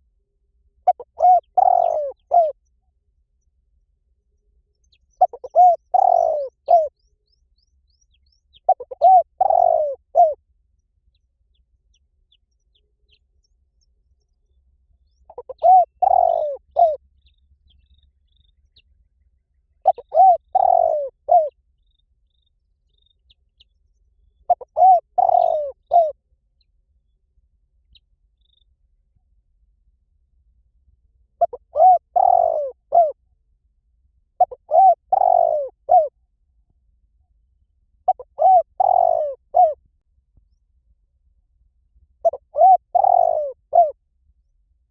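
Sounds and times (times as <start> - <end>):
dove cooing: 0.8 - 2.6, 5.2 - 6.9, 8.6 - 10.4, 15.3 - 17.0, 19.8 - 21.6, 24.5 - 26.2, 31.4 - 33.2, 34.4 - 36.1, 38.1 - 39.8, 42.2 - 44.0.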